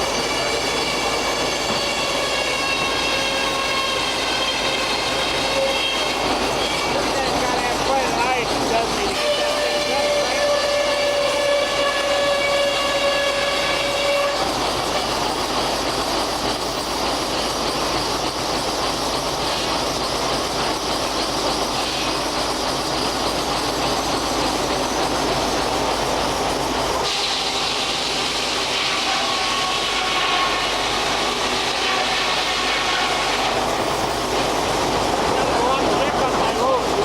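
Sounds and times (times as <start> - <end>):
circular saw whine: 0.0 - 15.4.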